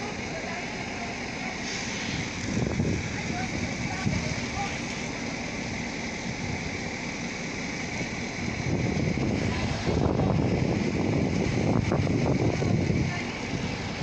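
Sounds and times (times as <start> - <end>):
wind buffeting microphone: 1.9 - 4.9, 8.0 - 14.0.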